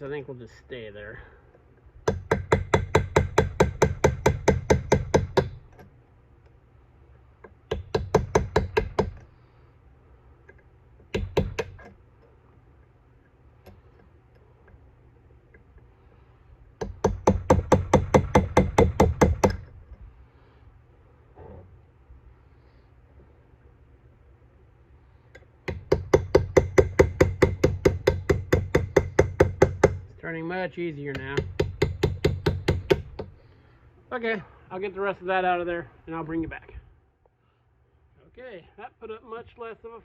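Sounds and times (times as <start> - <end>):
hammer tapping metal punch: 25.4 - 30.0, 31.1 - 33.3.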